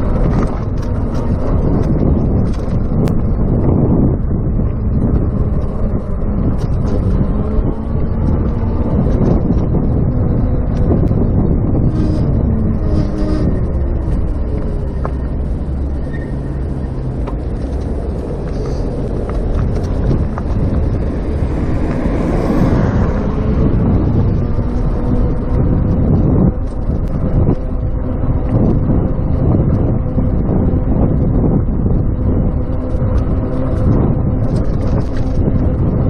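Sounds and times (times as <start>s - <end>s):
electric bike road noise: 0.0s - 36.0s
wind rumble on microphone: 0.0s - 36.0s.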